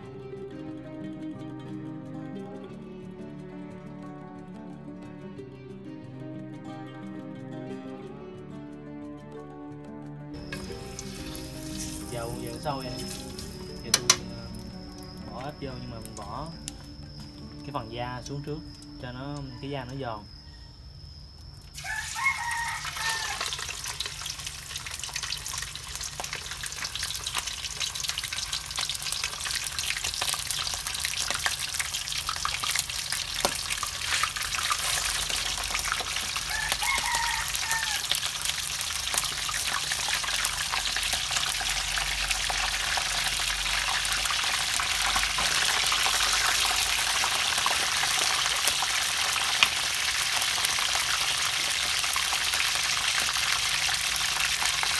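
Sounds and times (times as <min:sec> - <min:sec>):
frog pieces sizzling in hot oil: 0:10.4 - 0:19.5, 0:21.4 - 0:54.9
chicken calling: 0:21.8 - 0:23.8, 0:35.0 - 0:38.6.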